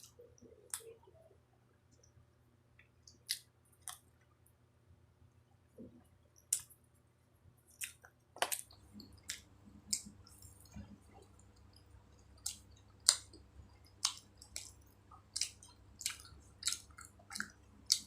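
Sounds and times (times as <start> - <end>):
close chewing: 7.8 - 18.0.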